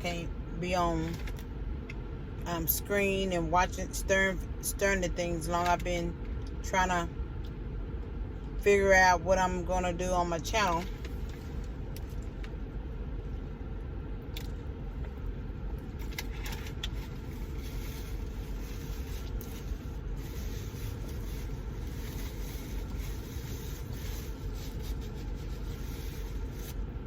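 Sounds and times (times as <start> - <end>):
steady low rumble: 0.0 - 27.0
small clicks and scrapes: 16.0 - 26.8.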